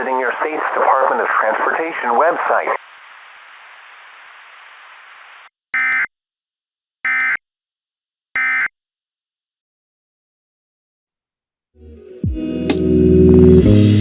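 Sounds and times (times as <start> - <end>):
static hiss: 0.0 - 5.5.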